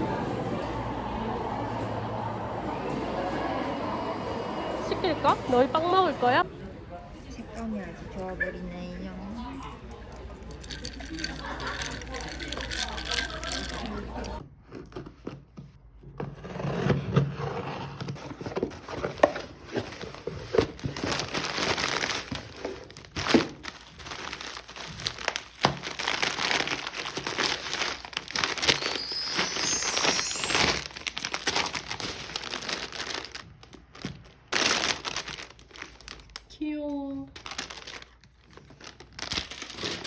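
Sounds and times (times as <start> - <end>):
packaging crinkling: 19.2 - 36.5, 37.2 - 40.0.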